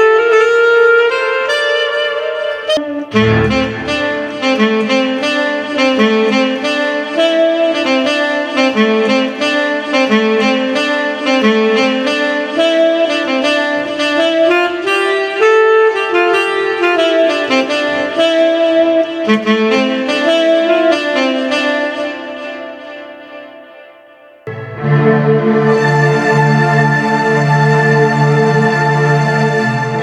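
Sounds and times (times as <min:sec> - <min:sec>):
keyboard wind-instrument melody: 0:00.0 - 0:30.0
steady rhythm accompaniment: 0:03.0 - 0:04.8, 0:24.5 - 0:30.0.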